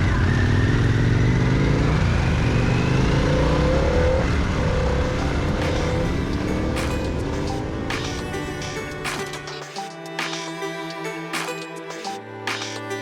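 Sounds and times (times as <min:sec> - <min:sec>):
motorcycle engine accelerating: 0:00.0 - 0:07.9.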